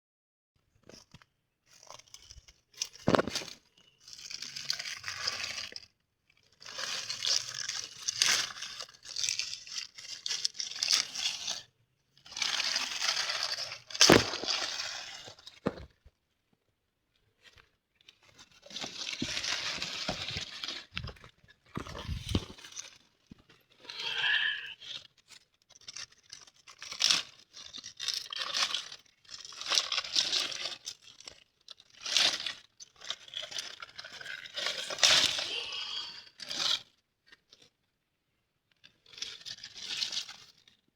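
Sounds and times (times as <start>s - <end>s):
pineapple crunching and tearing: 12.4s - 15.9s, 18.6s - 23.1s, 23.8s - 24.9s, 25.8s - 36.8s.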